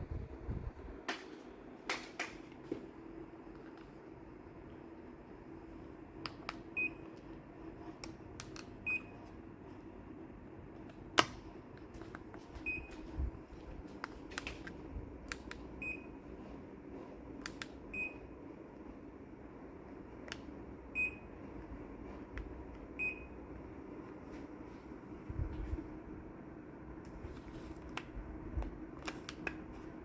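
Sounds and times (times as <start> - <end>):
steady low hum: 0.0 - 30.0
air conditioner short high beeps: 6.7 - 7.3, 8.8 - 9.4, 12.4 - 13.5, 15.8 - 16.5, 17.7 - 18.5, 20.9 - 22.3, 22.9 - 23.6.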